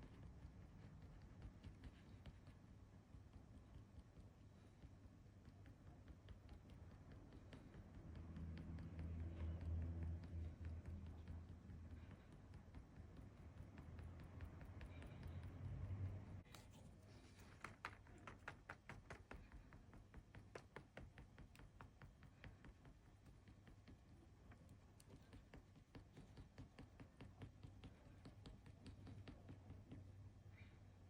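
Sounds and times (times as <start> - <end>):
faint low hum: 0.0 - 31.0
light quick tapping on paper: 16.5 - 24.0.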